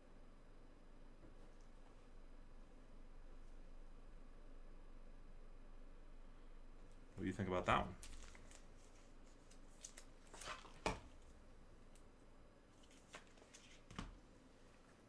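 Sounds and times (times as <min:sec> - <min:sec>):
trading cards rustling: 0:07.7 - 0:11.3, 0:12.8 - 0:14.1.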